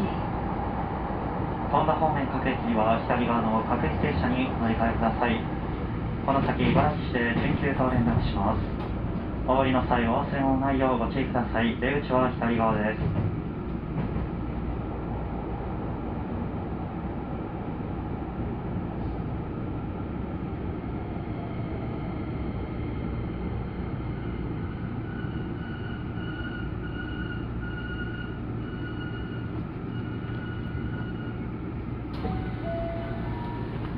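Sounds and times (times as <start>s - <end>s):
train rumbling: 0.0s - 33.9s
level crossing warning bell: 32.2s - 33.9s.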